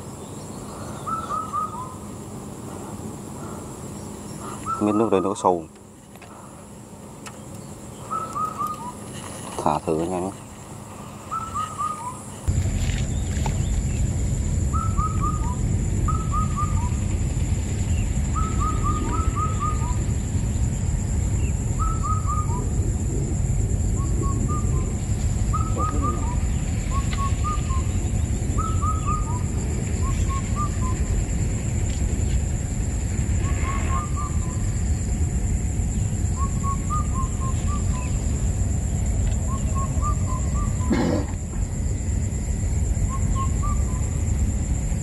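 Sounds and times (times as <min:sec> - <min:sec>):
steady low rumble: 0:00.0 - 0:45.0
bird calling falling notes: 0:01.0 - 0:02.0, 0:08.0 - 0:09.0, 0:18.3 - 0:20.0.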